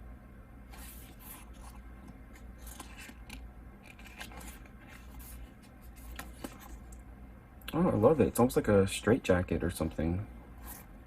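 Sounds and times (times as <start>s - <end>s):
paper rustling and crinkling: 0.7s - 7.0s.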